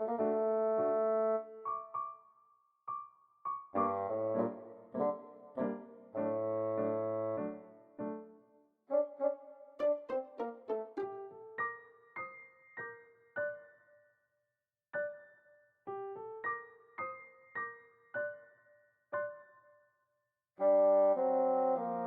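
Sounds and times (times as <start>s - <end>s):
slow electric piano melody: 0.0s - 2.2s, 2.9s - 8.4s, 15.0s - 19.6s.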